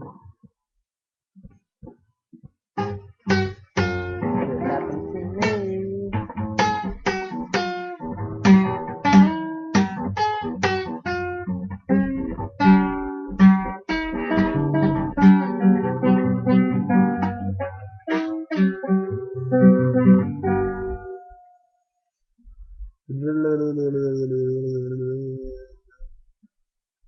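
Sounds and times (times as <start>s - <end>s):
solo guitar playing: 2.8s - 21.5s.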